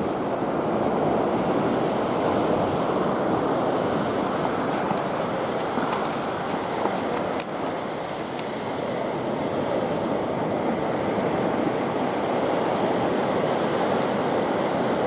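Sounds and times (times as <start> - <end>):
ocean surf washing onto beach: 0.0 - 15.0.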